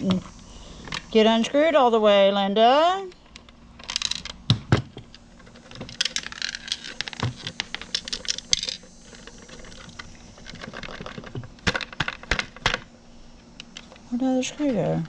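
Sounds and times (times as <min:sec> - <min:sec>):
small metal parts clicking and rattling: 0:03.1 - 0:04.4, 0:05.0 - 0:12.9.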